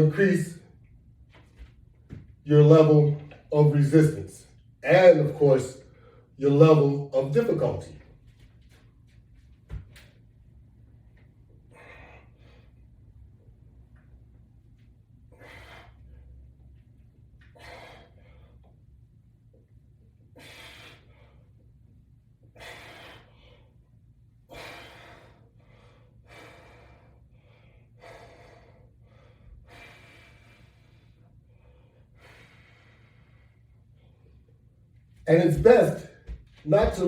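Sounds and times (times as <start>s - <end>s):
low steady hum: 0.0s - 37.0s
man breathing hard: 5.8s - 6.4s, 11.5s - 13.2s, 15.2s - 16.8s, 17.4s - 18.9s, 20.2s - 34.6s.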